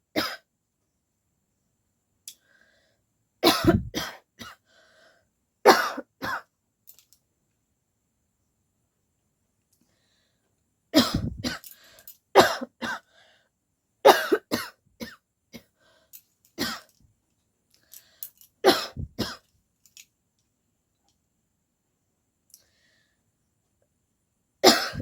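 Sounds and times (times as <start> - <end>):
woman coughing harshly: 0.2 - 0.4, 3.4 - 4.6, 5.7 - 6.5, 11.0 - 11.7, 12.4 - 13.0, 14.1 - 15.7, 16.6 - 16.9, 18.6 - 19.4, 24.6 - 25.0.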